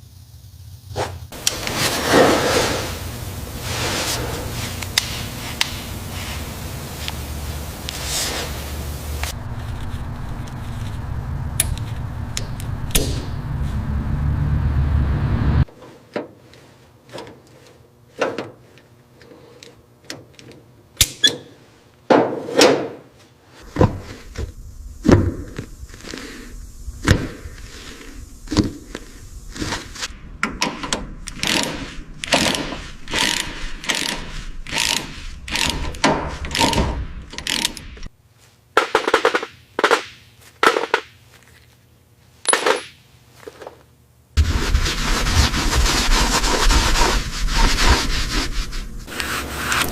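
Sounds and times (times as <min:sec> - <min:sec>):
hand tools knocking and scraping: 0:29.6 - 0:38.1.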